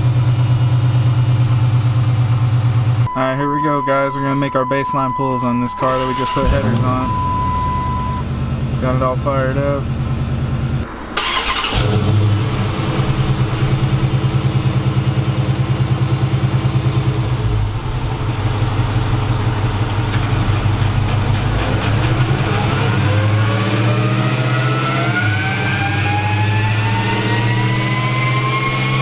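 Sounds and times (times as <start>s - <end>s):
rising whine: 0.0s - 29.0s
car engine revving on dyno: 9.9s - 29.0s.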